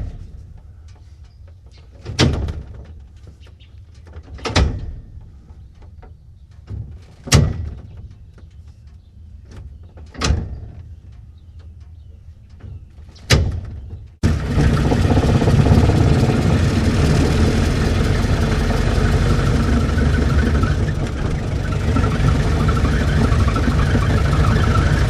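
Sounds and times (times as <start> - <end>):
loud engine-like running noise: 14.2 - 25.0
low steady rumble: 14.2 - 25.0.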